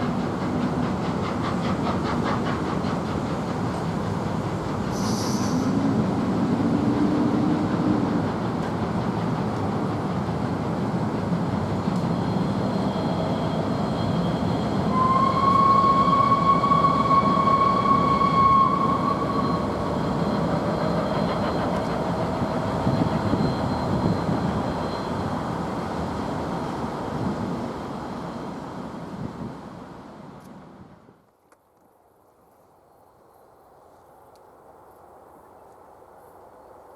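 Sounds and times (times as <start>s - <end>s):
steam train rumbling past: 0.0s - 30.9s
train whistle: 12.3s - 21.8s.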